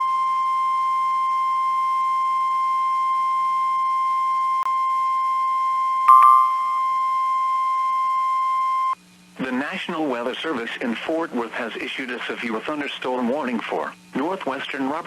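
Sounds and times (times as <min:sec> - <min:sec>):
short higher blip: 0:06.1 - 0:06.6
steady alarm tone: 0:06.1 - 0:06.7.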